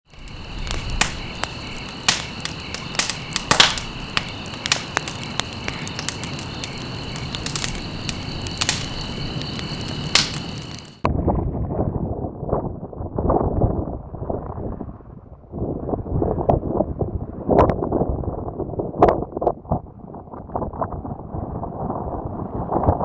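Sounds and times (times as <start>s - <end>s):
high insect chirring: 0.1s - 11.1s
sharp taps and crackles: 0.1s - 11.1s.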